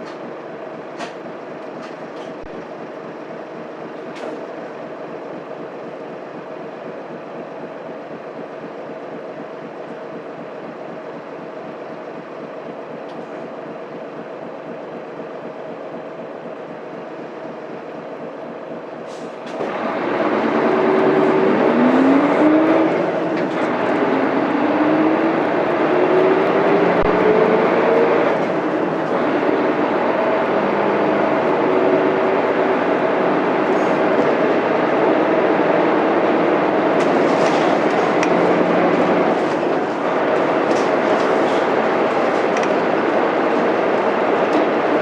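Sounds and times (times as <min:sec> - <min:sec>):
bus diesel engine revving: 0:19.0 - 0:45.0.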